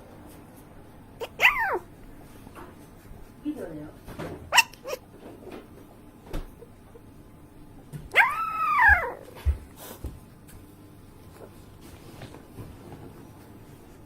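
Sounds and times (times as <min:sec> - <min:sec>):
dog whimpering: 0:01.2 - 0:01.9, 0:08.1 - 0:09.4.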